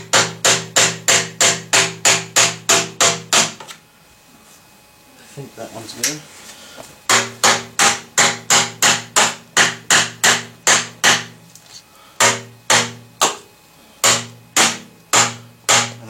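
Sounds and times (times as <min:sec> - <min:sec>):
hammer knocking on plastic pipe: 0:00.0 - 0:03.7, 0:07.1 - 0:11.4, 0:12.2 - 0:13.4, 0:14.0 - 0:16.0.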